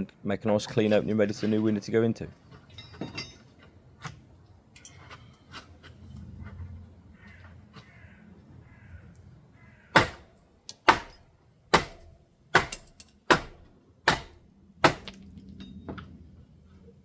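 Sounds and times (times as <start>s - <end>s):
sharp knocks: 10.0s - 15.2s.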